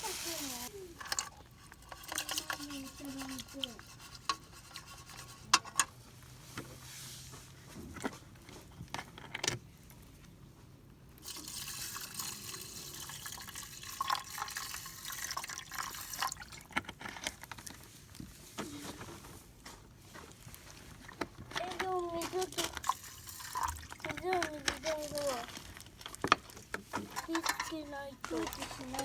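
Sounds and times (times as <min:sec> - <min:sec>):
rush of pouring water: 0:00.0 - 0:00.7, 0:11.2 - 0:16.7, 0:22.4 - 0:25.5
water sloshing in metal tin: 0:00.0 - 0:05.9, 0:11.2 - 0:19.0, 0:20.1 - 0:29.0.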